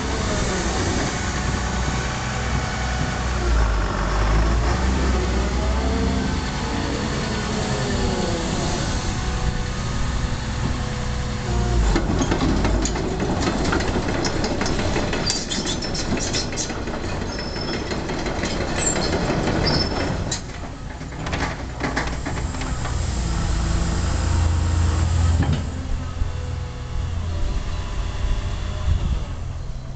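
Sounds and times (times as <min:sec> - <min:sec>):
diesel engine running: 0:00.0 - 0:29.9
metallic clanking and rattling: 0:11.9 - 0:23.0.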